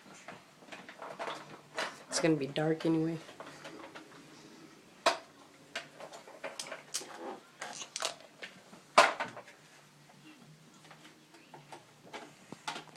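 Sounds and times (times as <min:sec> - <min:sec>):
small hard objects clicking: 0:05.8 - 0:08.2.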